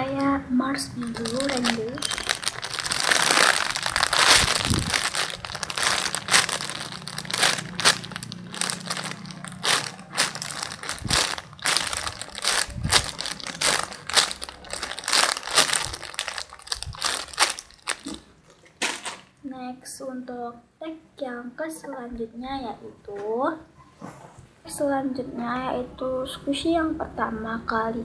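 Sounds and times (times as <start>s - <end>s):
foam toy crinkling: 0.0s - 18.3s.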